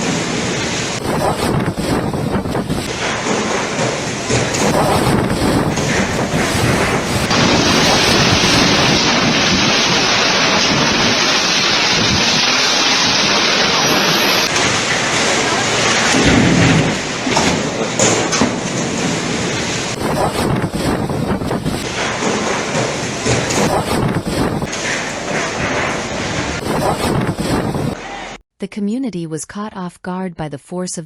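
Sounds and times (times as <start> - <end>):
storm wind and rain: 0.0 - 28.0
wind buffeting microphone: 1.0 - 3.0, 4.3 - 14.8, 19.9 - 22.0, 23.4 - 24.7, 26.3 - 28.0
low rumble: 4.4 - 14.6.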